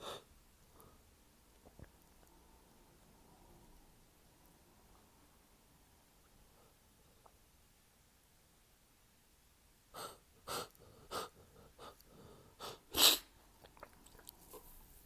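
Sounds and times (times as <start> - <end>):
man sneezing stifled: 12.9 - 13.3.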